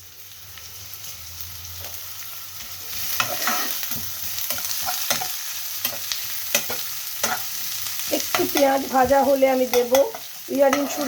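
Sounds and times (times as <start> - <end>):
vegetables sizzling in hot oil: 0.0 - 11.0
spatula scraping a pan: 2.6 - 11.0.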